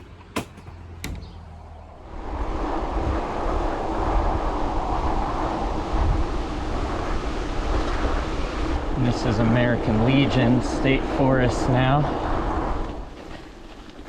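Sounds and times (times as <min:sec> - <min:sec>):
wind on microphone: 0:01.0 - 0:13.2
bike tyre rumble on gravel: 0:11.1 - 0:14.0.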